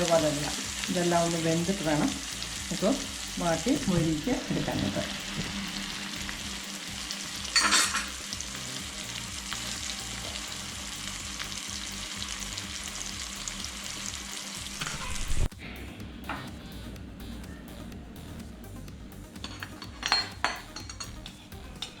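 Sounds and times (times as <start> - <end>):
onions sizzling in a pan: 0.0 - 15.5.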